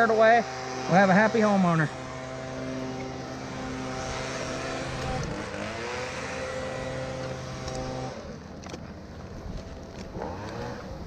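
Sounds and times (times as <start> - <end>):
engine pitch sliding down and up: 0.0 - 8.6
vehicle engine running: 0.0 - 11.0.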